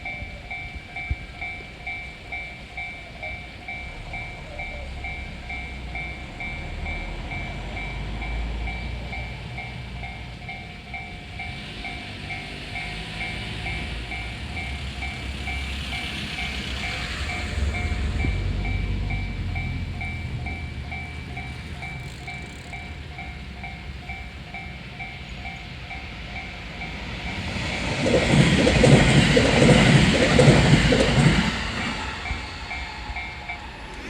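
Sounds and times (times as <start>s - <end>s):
railroad crossing bell ringing: 0.0s - 34.0s
train passing over crossing: 0.0s - 34.0s.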